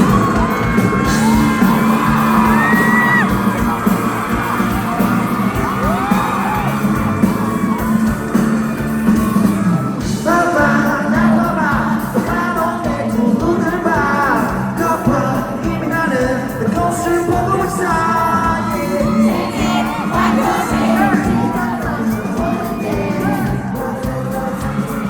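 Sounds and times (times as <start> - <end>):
audience shouting and whooping: 0.0 - 10.2, 18.3 - 23.8
rock band playing live: 0.0 - 25.0.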